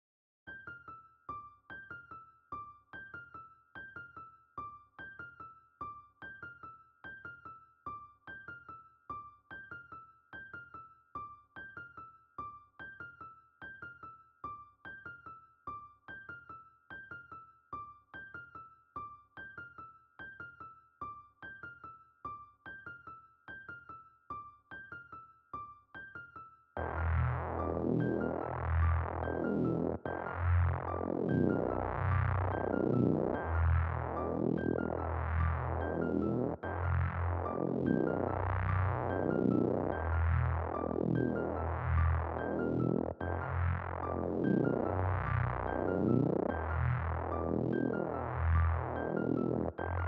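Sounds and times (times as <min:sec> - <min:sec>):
deep bass and beat: 0:26.8 - 0:49.7
electric piano melody: 0:26.8 - 0:50.0.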